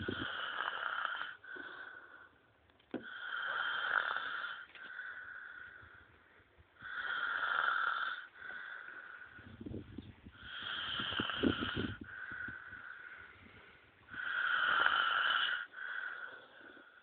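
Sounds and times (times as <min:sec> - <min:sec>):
man snoring heavily: 0:00.0 - 0:02.1, 0:03.0 - 0:05.8, 0:06.8 - 0:09.4, 0:10.4 - 0:13.2, 0:14.1 - 0:17.0.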